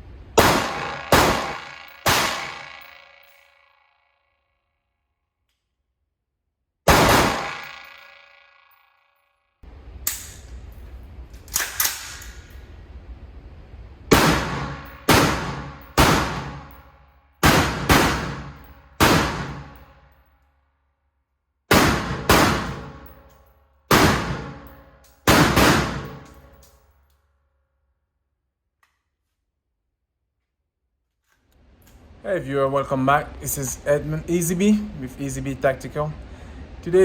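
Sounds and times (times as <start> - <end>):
sharp metallic clangs: 0.8 - 4.0, 7.0 - 9.2.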